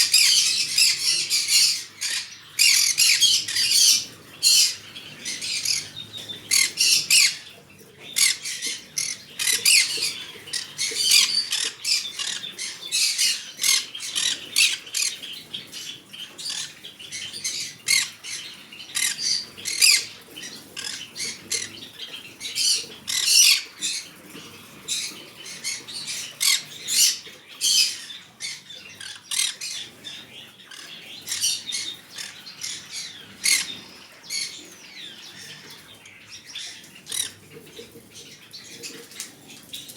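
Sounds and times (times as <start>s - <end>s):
parrot squawking and chattering: 0.0s - 7.5s, 8.2s - 15.2s, 25.0s - 29.9s, 30.7s - 34.6s.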